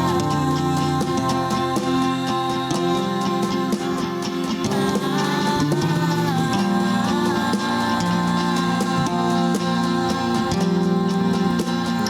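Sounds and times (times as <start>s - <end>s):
acoustic guitar accompaniment: 0.0s - 12.0s
person singing long wordless notes: 0.0s - 12.0s.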